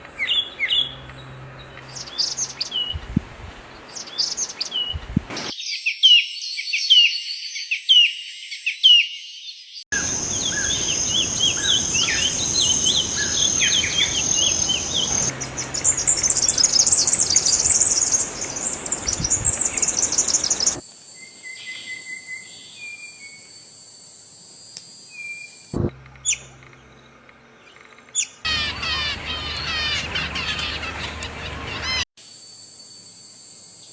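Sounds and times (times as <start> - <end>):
songbirds chirping: 0.0 - 23.5
birds chattering: 10.0 - 20.8, 26.1 - 32.0.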